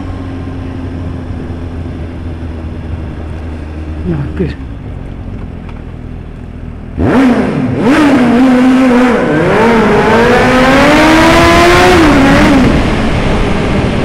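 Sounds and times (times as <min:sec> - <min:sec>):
motorcycle engine revving: 0:00.0 - 0:14.0.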